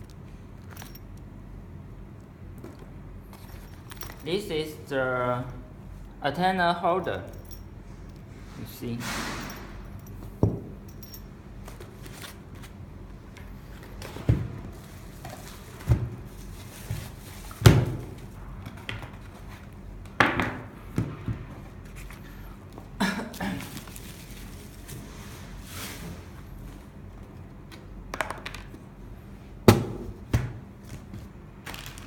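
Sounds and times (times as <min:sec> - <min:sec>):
parts knocking on a surface: 0:10.4 - 0:10.7.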